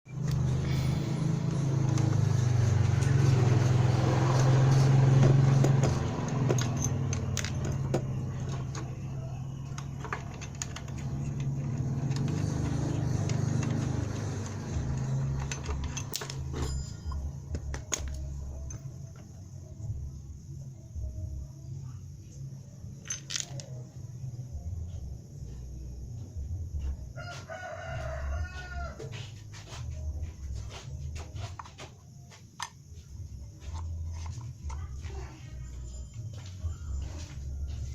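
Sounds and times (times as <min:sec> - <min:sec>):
brush cutter engine running: 0:00.1 - 0:08.9, 0:09.7 - 0:16.6
metallic clicks and rattles: 0:04.3 - 0:18.9, 0:23.0 - 0:23.8.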